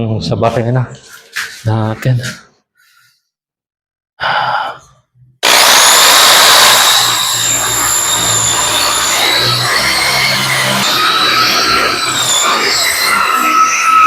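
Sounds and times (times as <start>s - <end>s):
electric drill boring wood: 5.4s - 14.0s.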